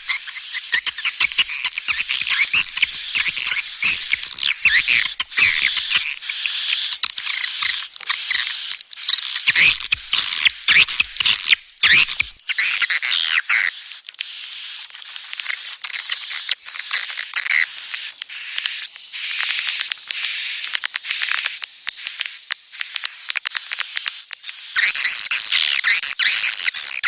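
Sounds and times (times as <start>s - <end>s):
swiftlets chirping: 0.0s - 7.6s.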